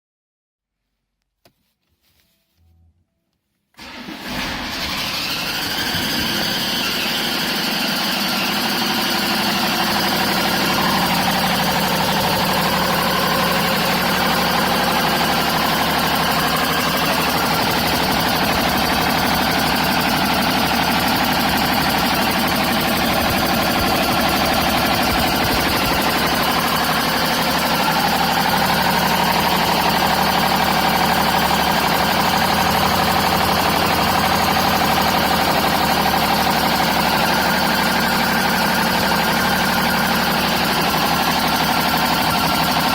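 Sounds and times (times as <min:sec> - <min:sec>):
diesel engine starting and idling: 0:03.8 - 0:42.9.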